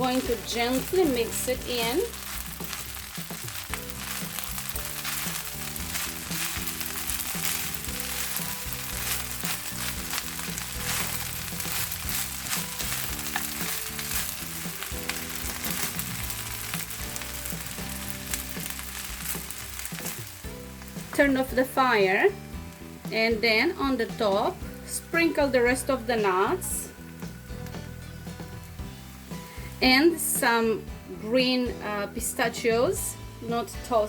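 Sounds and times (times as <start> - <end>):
spatula scraping pan: 0.0 - 20.3
meat sizzling in hot oil: 0.0 - 33.4
soft background music: 0.0 - 34.0.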